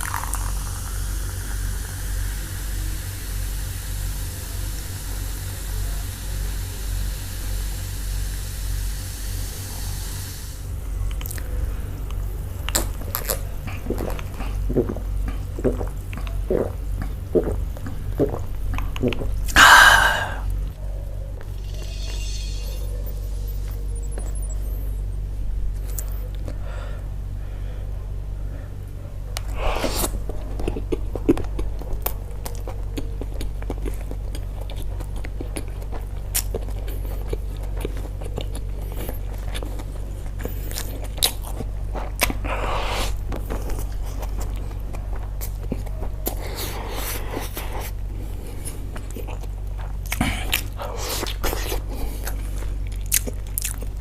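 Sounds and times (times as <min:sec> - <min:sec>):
low hum: 0:00.0 - 0:54.0
chewing and biting: 0:11.0 - 0:20.8, 0:29.3 - 0:54.0.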